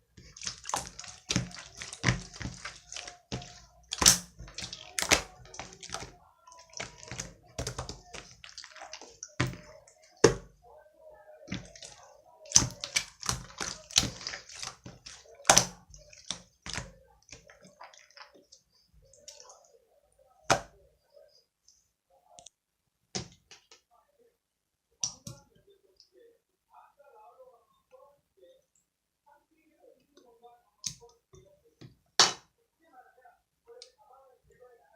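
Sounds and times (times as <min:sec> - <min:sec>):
soft slime crackling: 0:00.0 - 0:10.6, 0:11.4 - 0:19.6.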